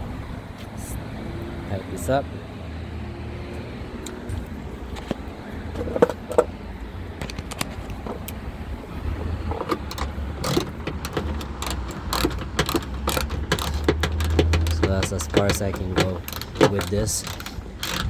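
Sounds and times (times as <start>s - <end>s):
metal clicks of hand tool: 9.2s - 18.0s.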